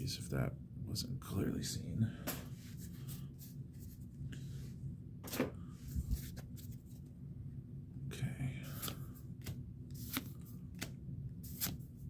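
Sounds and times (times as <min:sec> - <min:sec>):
steady low hum: 0:00.0 - 0:12.0
trading cards and foil packs rustling: 0:08.7 - 0:12.0.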